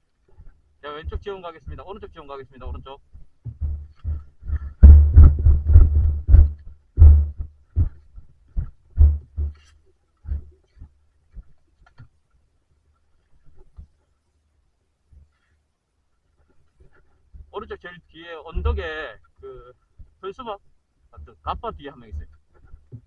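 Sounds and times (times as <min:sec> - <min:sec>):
footfalls thumping: 0:00.4 - 0:10.8, 0:18.6 - 0:20.1.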